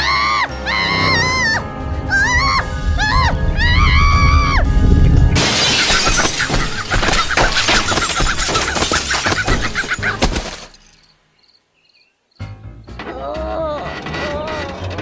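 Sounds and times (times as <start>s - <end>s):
breaking and clattering pieces: 5.4s - 11.1s
cartoon shattering: 5.4s - 11.1s.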